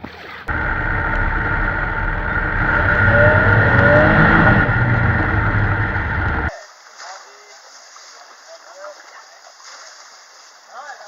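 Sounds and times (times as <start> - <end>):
moving motor vehicle running: 0.5 - 6.5.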